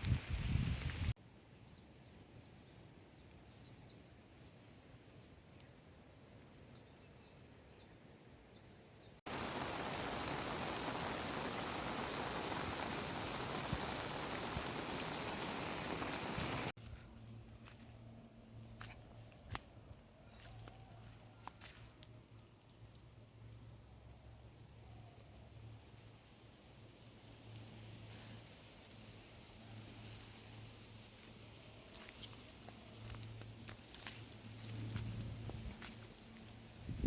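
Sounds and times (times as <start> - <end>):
small birds chirping: 1.7 - 17.8.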